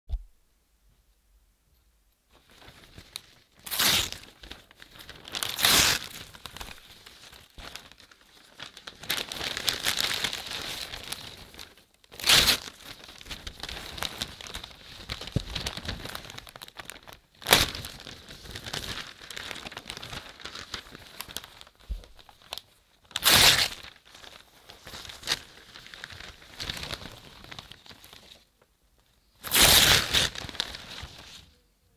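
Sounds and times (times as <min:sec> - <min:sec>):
paper crinkling and rustling: 0:02.3 - 0:31.6
paper poster tearing: 0:03.6 - 0:04.5, 0:05.1 - 0:06.8, 0:12.1 - 0:14.5, 0:23.1 - 0:24.0, 0:29.4 - 0:31.4.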